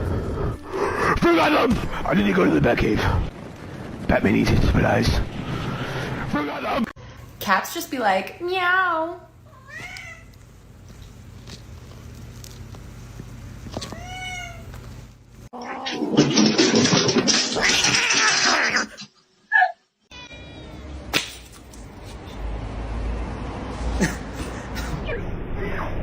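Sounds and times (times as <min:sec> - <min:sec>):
cat meowing and yowling: 0:13.8 - 0:14.7.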